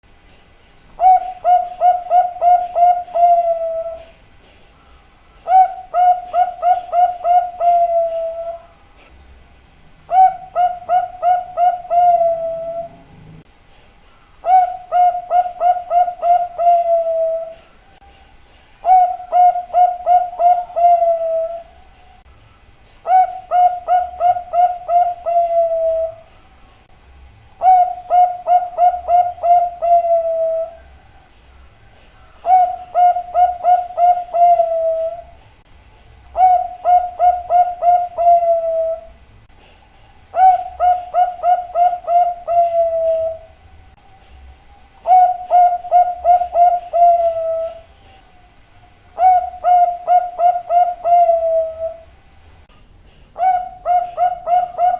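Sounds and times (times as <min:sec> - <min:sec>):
dove cooing: 0:01.0 - 0:04.2, 0:05.4 - 0:08.8, 0:10.1 - 0:13.5, 0:14.4 - 0:17.8, 0:18.8 - 0:21.9, 0:23.0 - 0:26.4, 0:27.6 - 0:31.2, 0:32.2 - 0:35.4, 0:36.3 - 0:39.2, 0:40.3 - 0:43.6, 0:45.0 - 0:48.3, 0:49.2 - 0:52.2, 0:53.4 - 0:54.9.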